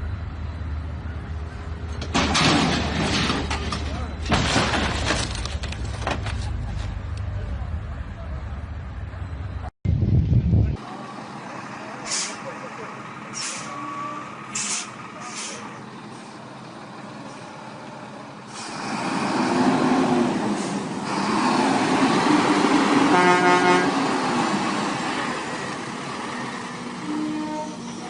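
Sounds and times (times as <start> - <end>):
truck engine working hard: 10.3 - 28.0
air brakes hissing: 12.0 - 12.5, 13.2 - 13.8, 14.5 - 16.4, 18.4 - 19.0, 20.4 - 21.4
truck horn toot: 13.6 - 14.4, 23.0 - 24.2, 27.0 - 27.9.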